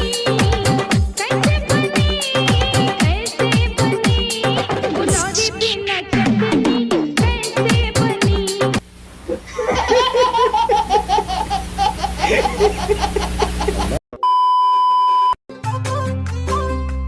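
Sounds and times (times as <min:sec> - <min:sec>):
music: 0:00.0 - 0:08.8, 0:15.5 - 0:17.0
high-pitched laughter: 0:09.3 - 0:14.0.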